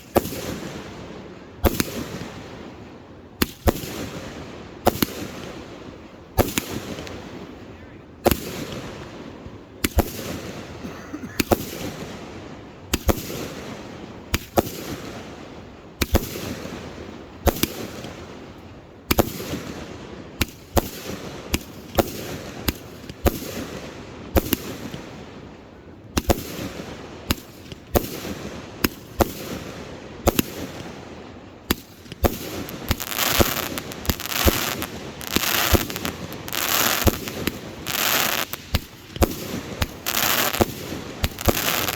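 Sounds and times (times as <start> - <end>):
fireworks hissing: 32.1 - 41.9
fireworks shells bursting: 32.1 - 41.9.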